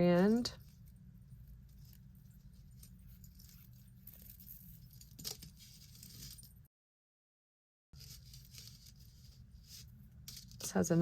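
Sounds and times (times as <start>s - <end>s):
metal jewelry clinking: 0.2s - 6.7s.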